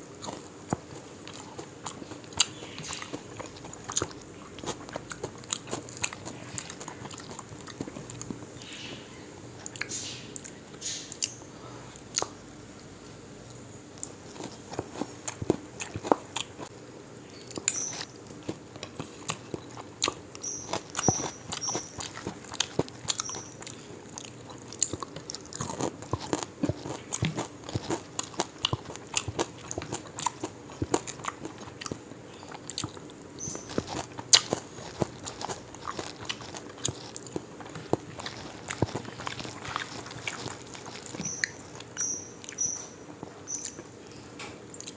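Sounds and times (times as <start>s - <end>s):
person chewing crisp fried fish: 0.0s - 9.0s, 14.0s - 16.8s, 17.4s - 43.9s.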